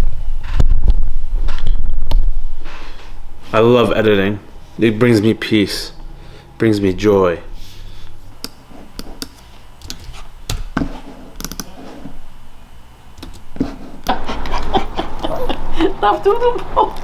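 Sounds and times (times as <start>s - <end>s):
loud busy noise: 14.1s - 17.0s.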